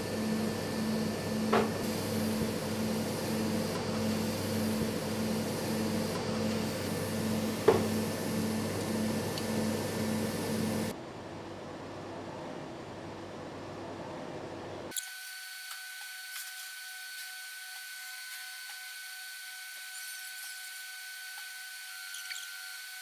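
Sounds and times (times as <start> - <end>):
machine hum with pulsing tone: 0.0 - 11.6.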